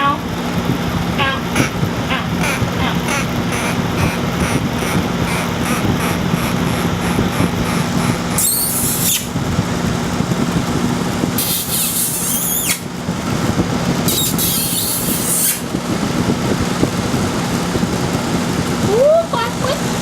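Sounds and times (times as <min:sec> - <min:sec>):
air conditioner humming: 0:00.0 - 0:20.0
bird squealing: 0:08.3 - 0:09.3, 0:11.4 - 0:12.9, 0:14.1 - 0:15.7.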